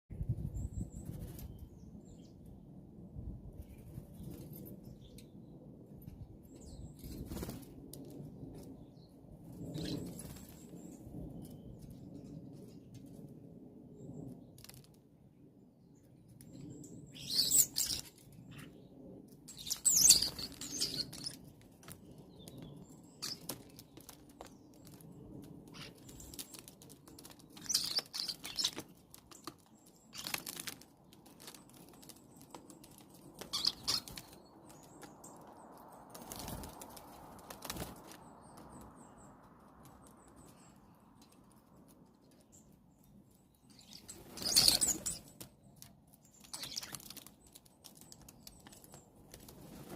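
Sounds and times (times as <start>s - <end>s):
wings flapping: 7.0s - 8.1s, 9.6s - 10.8s, 19.5s - 38.9s, 43.8s - 45.5s, 46.4s - 49.9s
starlings squeaky calls: 17.1s - 18.1s, 19.5s - 21.4s, 23.2s - 23.5s, 27.6s - 28.8s, 33.5s - 34.3s, 43.8s - 45.3s, 46.6s - 47.0s.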